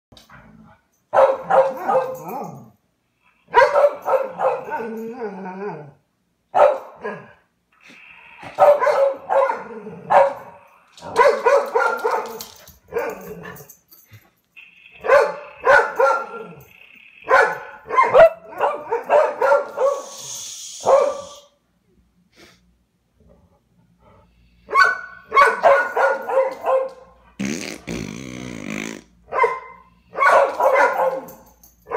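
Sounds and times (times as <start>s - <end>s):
dogs barking: 1.1s - 2.6s, 3.5s - 5.0s, 6.5s - 7.4s, 8.5s - 13.7s, 14.6s - 20.1s, 20.8s - 21.3s, 24.7s - 27.2s, 29.3s - 31.9s
fart noises from sound book: 27.4s - 29.2s.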